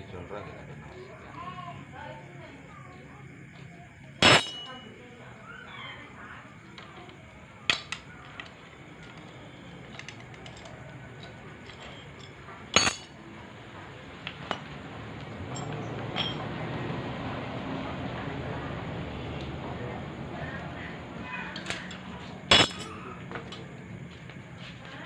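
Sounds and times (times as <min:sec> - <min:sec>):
metal tools clinking: 0:04.2 - 0:04.9, 0:07.7 - 0:13.2, 0:15.3 - 0:16.5, 0:21.6 - 0:23.7.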